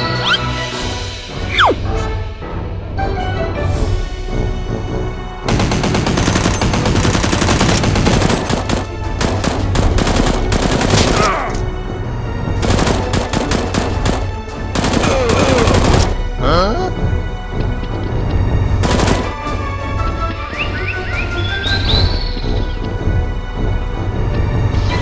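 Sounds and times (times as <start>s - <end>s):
background music with low beat: 3.6s - 25.0s
automatic gunfire: 5.5s - 11.3s, 14.8s - 16.1s.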